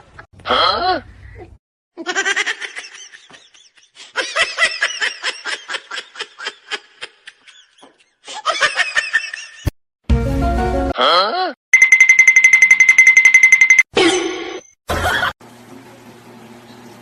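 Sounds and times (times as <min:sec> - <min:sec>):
laughter in pitched bursts: 0:02.0 - 0:09.7, 0:14.9 - 0:15.4.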